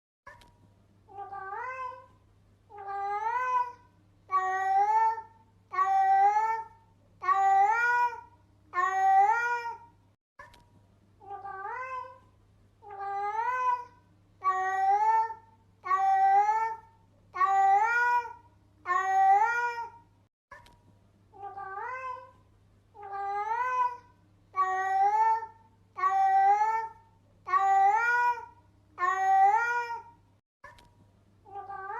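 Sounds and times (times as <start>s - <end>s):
cat meowing: 1.3s - 2.0s, 11.3s - 12.2s, 21.4s - 22.3s, 31.5s - 31.9s
short click: 30.6s - 30.9s.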